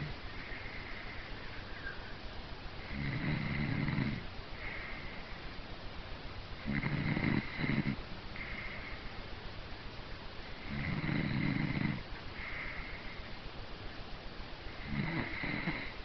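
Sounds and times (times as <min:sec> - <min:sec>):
faint whistling breath: 0:00.3 - 0:02.4
heavy snoring: 0:02.9 - 0:04.2, 0:06.6 - 0:08.7, 0:10.6 - 0:12.0, 0:14.8 - 0:16.0.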